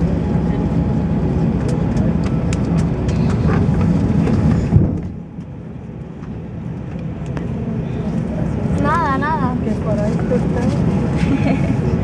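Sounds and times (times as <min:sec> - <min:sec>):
airplane cabin rumble: 0:00.0 - 0:12.0.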